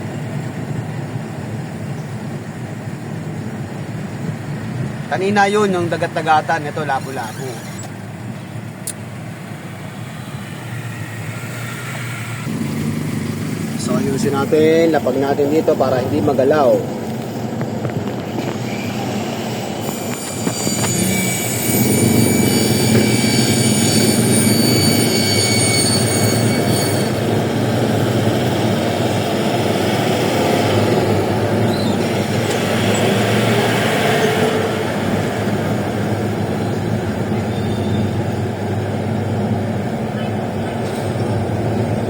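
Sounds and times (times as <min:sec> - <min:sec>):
vehicle road rumble: 0:00.0 - 0:42.0
thin high whines: 0:05.2 - 0:08.1, 0:18.4 - 0:27.4.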